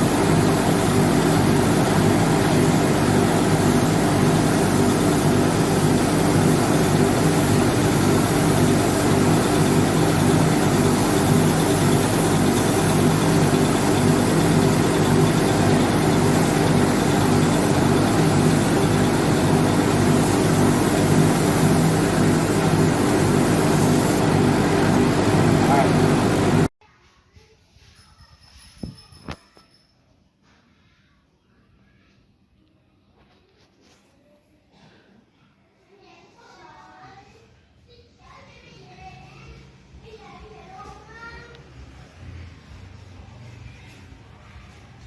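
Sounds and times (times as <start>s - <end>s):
electric motor hum: 0.0s - 26.7s.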